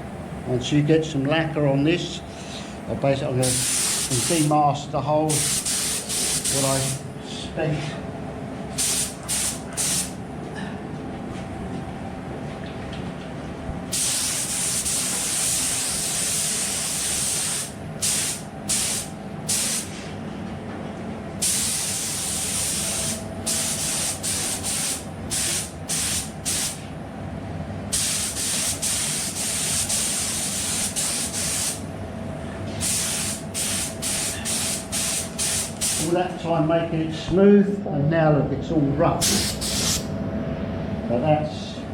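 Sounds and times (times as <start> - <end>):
paint spray gun hissing: 3.4 - 4.5, 5.4 - 7.0, 8.8 - 10.2, 14.0 - 20.0, 21.4 - 26.8, 27.9 - 31.8, 32.8 - 36.1, 39.2 - 40.0.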